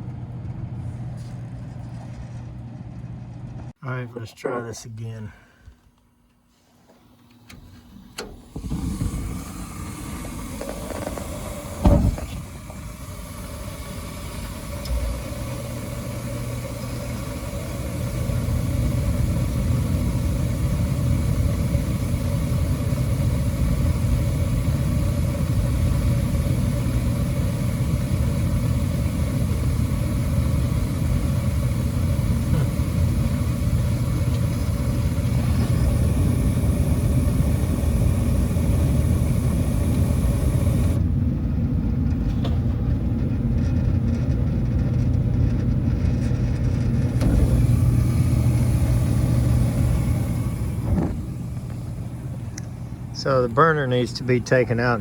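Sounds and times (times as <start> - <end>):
motor hum: 5.6 - 55.0
gas burner lighting poof: 7.0 - 55.0
burner roar: 8.5 - 41.1, 47.1 - 55.0.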